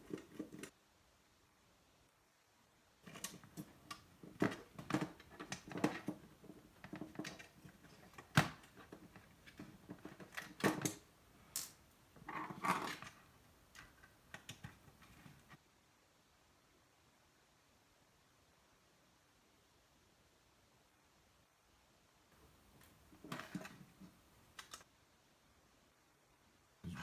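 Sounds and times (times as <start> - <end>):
hands clicking and tapping plastic parts: 0.0 - 0.7, 3.0 - 15.6, 22.4 - 24.8.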